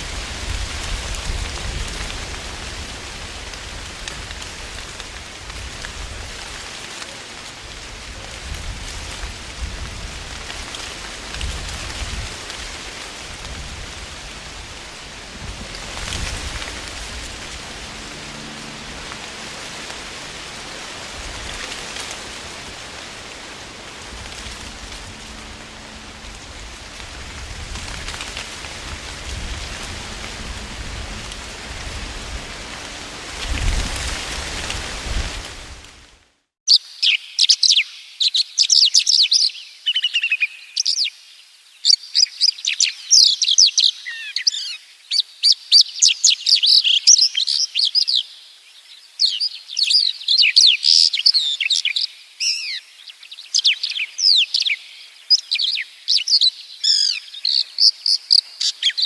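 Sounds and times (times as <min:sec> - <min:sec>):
wind through leaves: 0:00.0 - 0:59.0
small birds chirping: 0:36.7 - 0:59.0.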